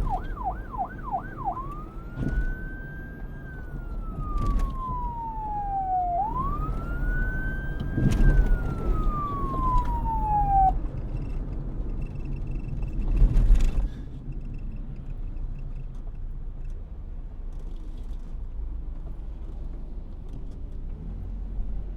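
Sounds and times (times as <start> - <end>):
police siren winding down: 0.0 - 10.8
low vehicle rumble: 0.0 - 21.9.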